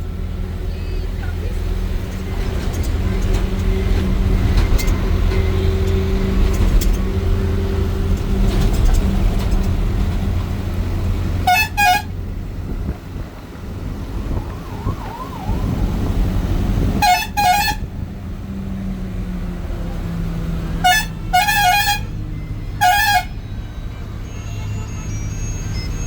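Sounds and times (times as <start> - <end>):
bus engine drone: 0.0 - 26.0
bus horn tooting: 0.5 - 2.7, 11.3 - 12.8, 16.8 - 18.1, 20.6 - 26.0.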